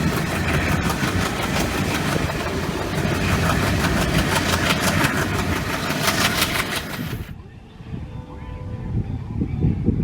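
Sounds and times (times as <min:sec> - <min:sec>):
locomotive engine rumbling: 0:00.0 - 0:07.4.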